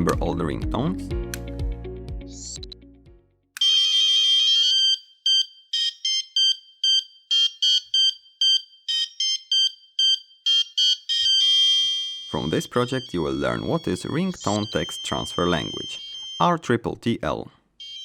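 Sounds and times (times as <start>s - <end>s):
piezo buzzer ringtone melody: 3.6s - 16.5s, 17.8s - 18.0s.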